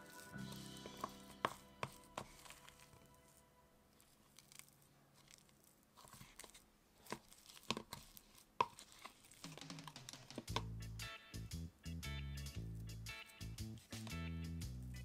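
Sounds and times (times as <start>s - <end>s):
background music: 0.0s - 3.8s, 9.5s - 15.0s
clay squishing by hand: 0.0s - 10.8s.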